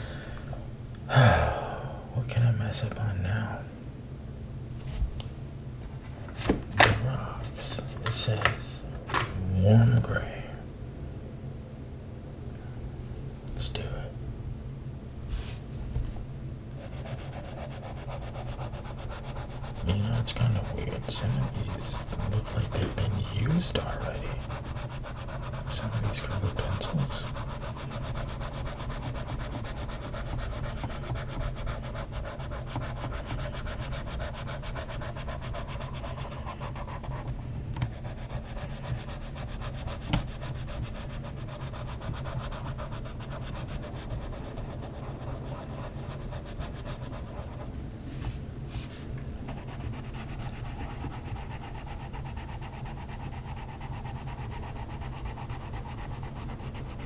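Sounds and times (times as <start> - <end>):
low steady hum: 0.0 - 57.0
colored pencil scratching on paper: 16.8 - 47.7, 48.8 - 57.0.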